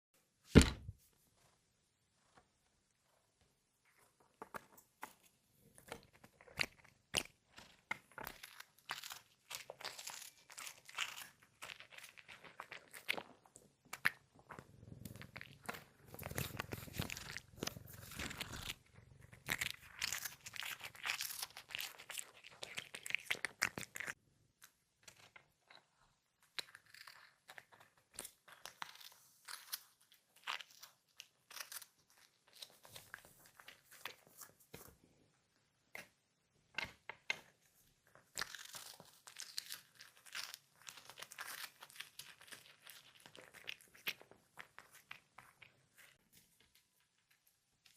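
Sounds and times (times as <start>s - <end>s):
cat crunching cookies: 3.8s - 35.1s, 36.8s - 47.9s.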